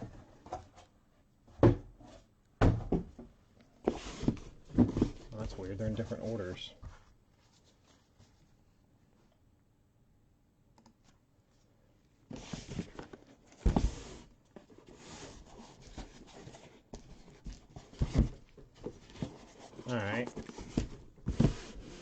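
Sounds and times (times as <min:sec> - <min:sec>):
box knocking down on surface: 0:02.6 - 0:03.2, 0:13.6 - 0:14.0
cardboard boxes rustling and scraping: 0:03.8 - 0:08.4, 0:12.3 - 0:22.0.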